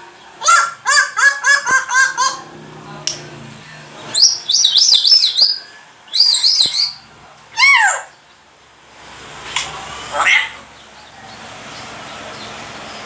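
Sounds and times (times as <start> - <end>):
parrot chirping: 0.4 - 2.6, 4.0 - 8.2, 10.1 - 11.2
parrot warbling whistles: 4.2 - 7.0.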